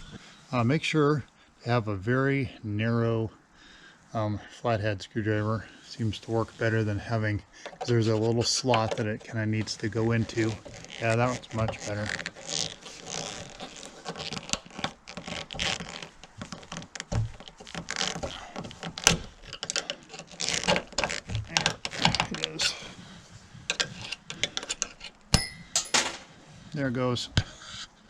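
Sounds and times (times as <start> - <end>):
screwdriver scraping and clicking metal: 7.6 - 22.7, 23.7 - 26.0.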